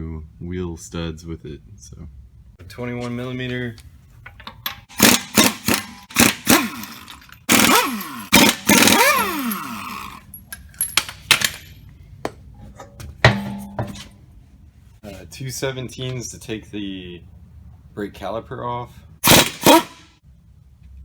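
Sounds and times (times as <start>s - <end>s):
impact wrench bursts: 4.8s - 10.3s, 19.2s - 20.1s.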